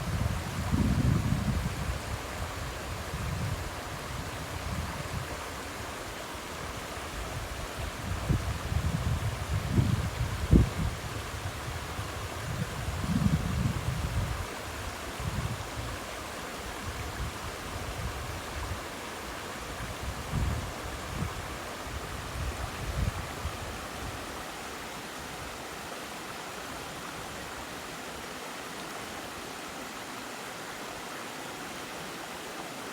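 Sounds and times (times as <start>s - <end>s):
wind rumble on microphone: 0.0s - 16.1s, 16.7s - 18.9s, 19.6s - 24.4s.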